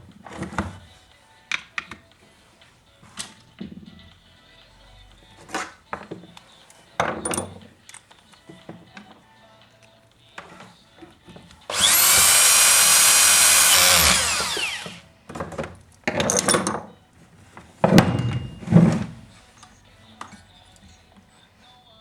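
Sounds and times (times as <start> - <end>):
scraping and handling noise: 0.0 - 3.9, 5.3 - 9.2, 10.3 - 12.6, 13.7 - 21.3
power tool motor whining: 11.7 - 15.1.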